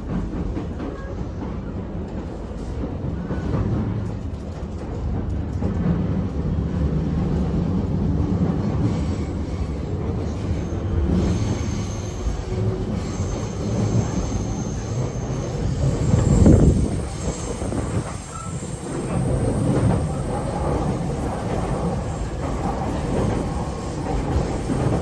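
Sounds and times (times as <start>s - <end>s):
wheels rumbling on rail: 0.0s - 25.0s
high wheel squeal: 11.1s - 20.6s.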